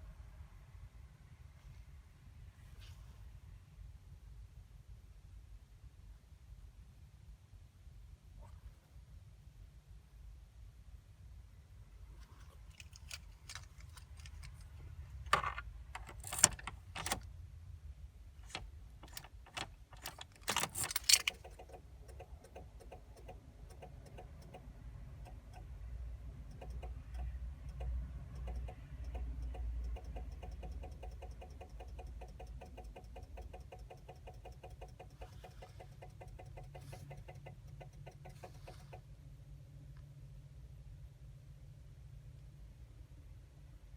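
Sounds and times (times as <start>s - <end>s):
starter circuit clicking: 18.4s - 25.7s, 26.4s - 39.0s.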